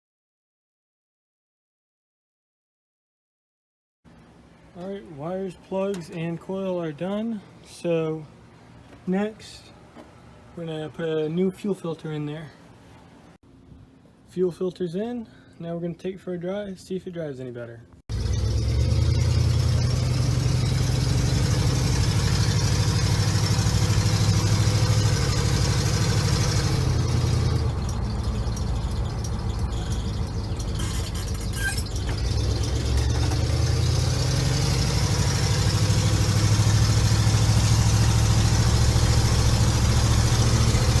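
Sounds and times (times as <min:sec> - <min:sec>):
pickup engine droning: 0:18.1 - 0:41.0.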